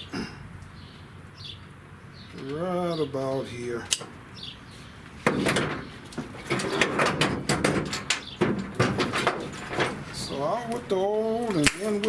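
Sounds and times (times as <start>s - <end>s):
wiring clicks snaps and scraping: 3.8s - 4.2s, 5.1s - 12.0s.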